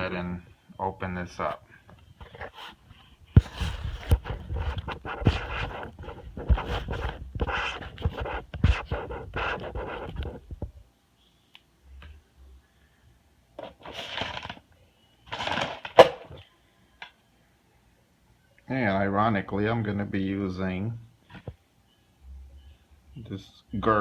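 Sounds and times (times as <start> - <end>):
plastic packaging crinkling: 13.8 - 14.6.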